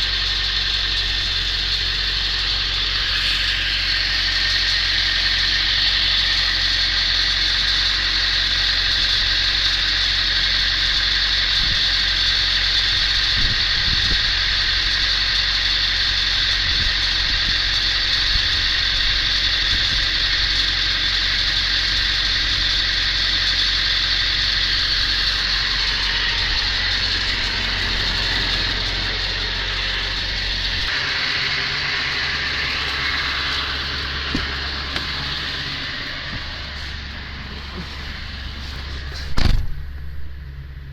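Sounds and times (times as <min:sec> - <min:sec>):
metallic rattle under truck: 0:00.0 - 0:40.7
diesel engine idling: 0:00.0 - 0:40.9.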